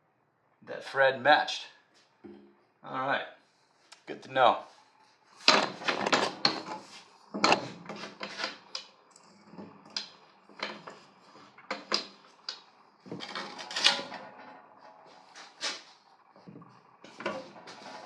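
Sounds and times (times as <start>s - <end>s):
rattle: 4.9s - 18.0s
tools clacking and knocking: 5.4s - 6.8s, 7.4s - 8.9s, 9.5s - 14.5s.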